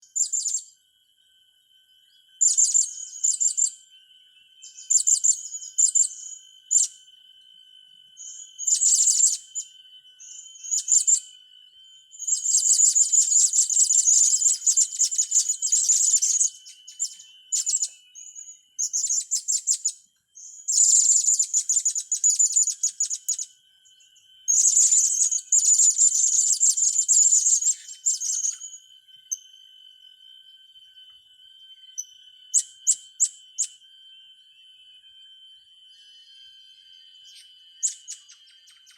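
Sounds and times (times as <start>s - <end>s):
faint high whine: 23.4s - 38.9s.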